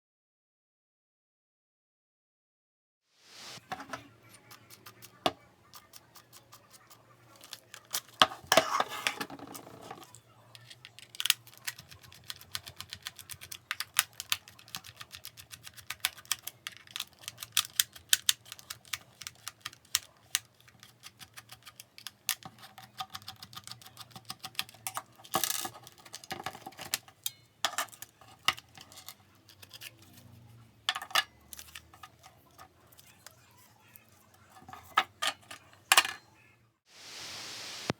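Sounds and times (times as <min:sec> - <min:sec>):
scraping and rustling: 0:03.2 - 0:11.7, 0:36.9 - 0:37.9.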